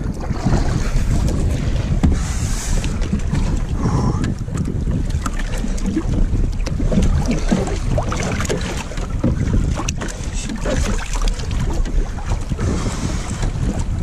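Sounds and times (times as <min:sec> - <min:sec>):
water splashing against hull: 0:00.0 - 0:14.0
wind buffeting microphone: 0:00.0 - 0:14.0.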